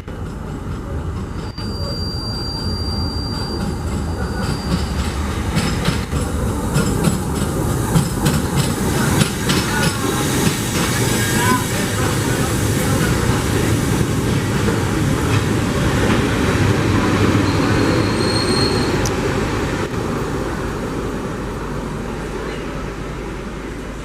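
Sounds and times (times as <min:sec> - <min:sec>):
train rumble: 0:00.0 - 0:24.0
high wheel squeal: 0:01.4 - 0:06.1, 0:17.1 - 0:19.1.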